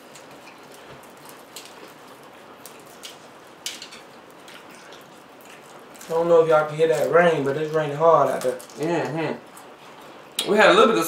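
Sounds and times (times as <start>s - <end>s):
hard rain hissing: 3.2s - 11.0s.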